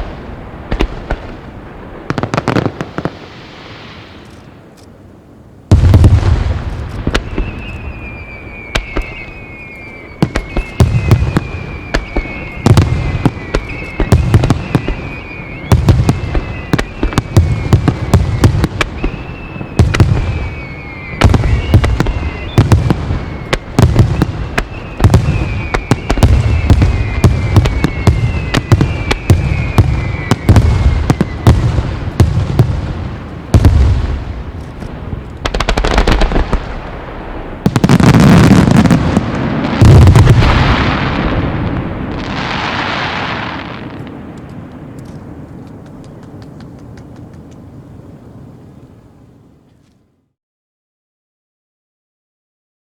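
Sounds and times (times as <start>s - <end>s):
descending firework whistles: 5.7s - 34.8s, 35.4s - 44.4s
firework shells bursting: 42.9s - 47.7s.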